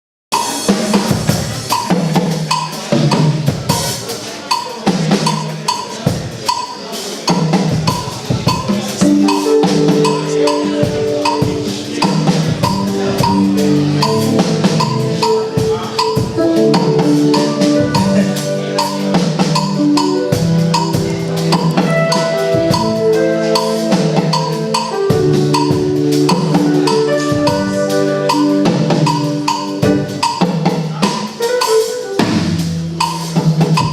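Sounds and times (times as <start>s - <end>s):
drum kit steady beat: 0.3s - 33.9s
repeating melodic line: 8.4s - 31.0s.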